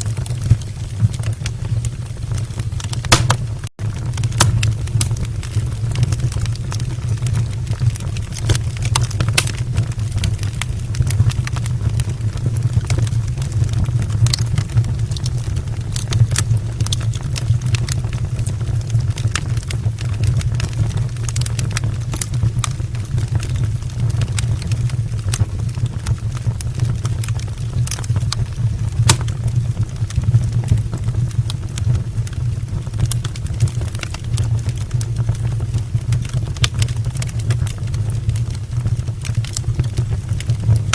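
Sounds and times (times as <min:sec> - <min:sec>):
fire flames rumbling: 0:00.0 - 0:40.9
logs crackling and popping: 0:00.0 - 0:40.9.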